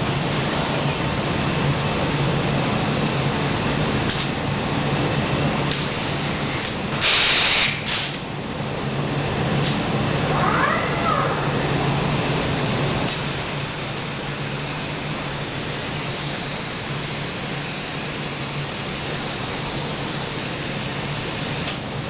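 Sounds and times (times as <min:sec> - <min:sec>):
low hum: 0:10.0 - 0:13.1.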